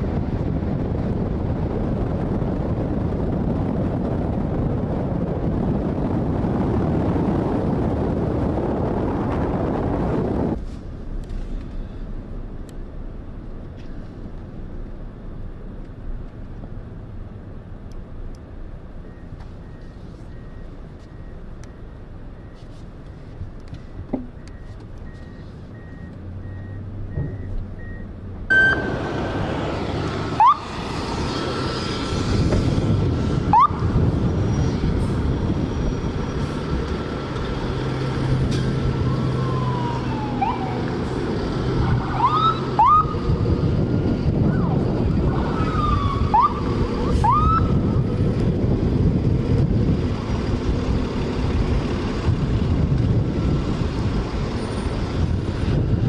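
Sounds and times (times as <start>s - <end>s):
low rumble of traffic: 0.0s - 56.0s
emergency siren whooping: 28.5s - 31.0s, 33.4s - 34.2s, 39.0s - 41.1s, 41.8s - 48.1s.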